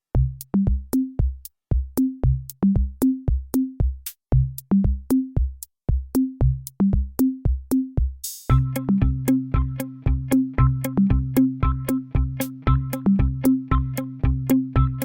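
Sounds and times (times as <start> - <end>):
drum-machine beat: 0.1 - 15.0
stepping bass line: 0.2 - 15.0.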